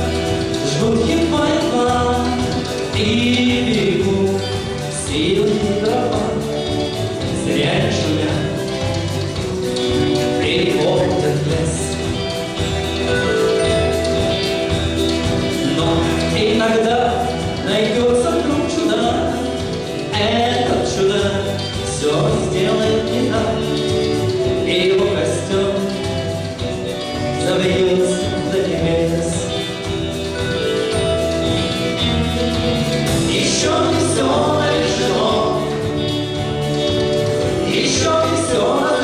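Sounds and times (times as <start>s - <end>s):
sustained instrumental notes: 0.0s - 39.0s
choir-like singing: 37.5s - 39.0s.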